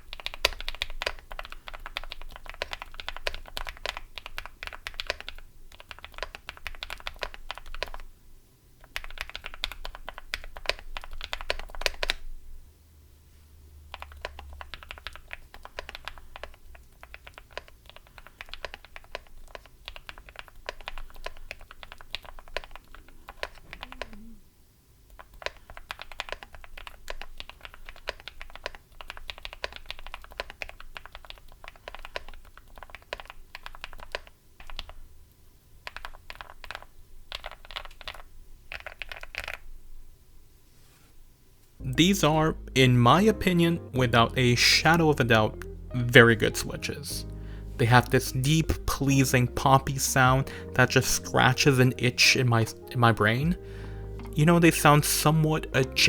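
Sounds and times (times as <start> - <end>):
mechanical keyboard typing: 0.0 - 8.1, 8.8 - 12.2, 13.9 - 24.3, 25.1 - 35.0, 35.8 - 39.7.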